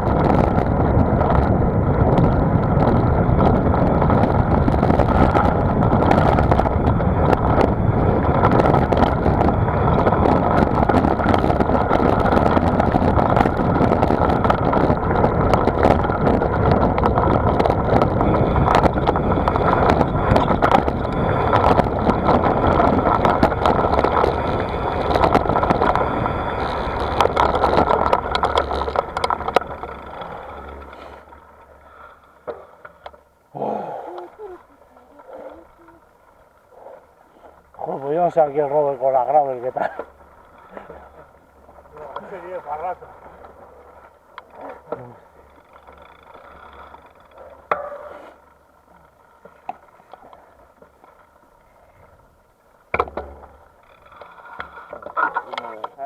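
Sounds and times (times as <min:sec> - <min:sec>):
wind rushing over microphone: 0:00.0 - 0:31.0
tyre and road rattle: 0:00.0 - 0:56.0.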